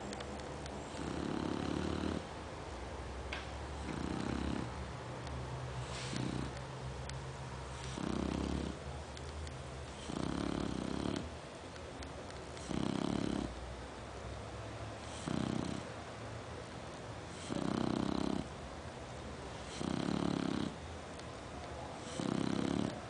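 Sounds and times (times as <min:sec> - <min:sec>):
dog snoring: 0:00.8 - 0:02.3, 0:03.7 - 0:04.8, 0:05.8 - 0:06.6, 0:07.7 - 0:08.8, 0:09.9 - 0:11.4, 0:12.6 - 0:13.6, 0:15.0 - 0:15.9, 0:17.3 - 0:18.6, 0:19.5 - 0:20.8, 0:22.0 - 0:23.0.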